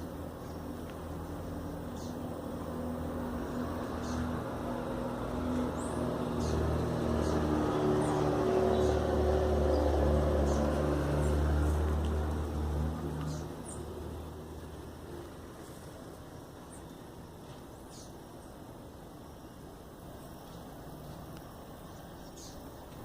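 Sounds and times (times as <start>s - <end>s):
vehicle engine passing by: 0.0s - 16.9s.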